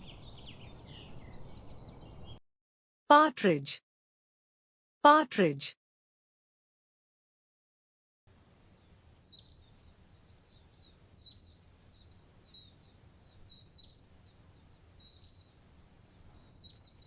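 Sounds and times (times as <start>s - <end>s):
partridge chirping calls: 8.7s - 17.0s.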